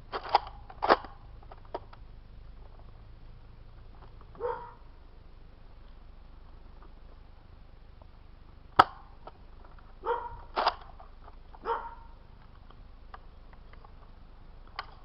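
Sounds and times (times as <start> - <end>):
dog barking: 4.4 - 4.9, 10.0 - 10.5, 11.6 - 12.2
sharp click: 8.8 - 9.4.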